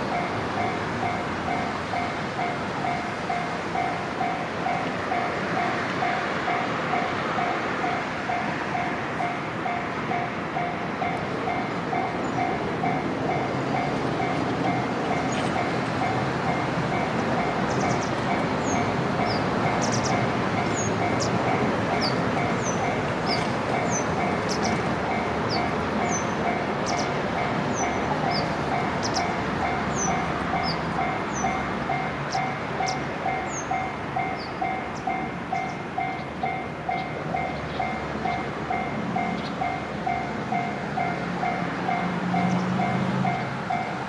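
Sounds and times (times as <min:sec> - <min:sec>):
level-crossing alarm dinging: 0:00.0 - 0:44.0
train running: 0:00.0 - 0:44.0
small birds chirping: 0:17.7 - 0:21.4, 0:22.0 - 0:24.8, 0:25.5 - 0:31.6.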